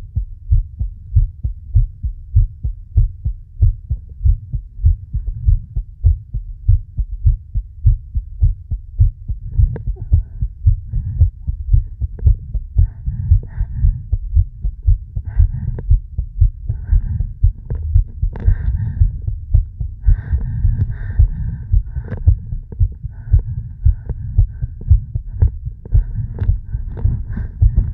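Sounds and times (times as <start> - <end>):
heartbeat thumps: 0.0 - 27.9
breathing: 9.3 - 27.9.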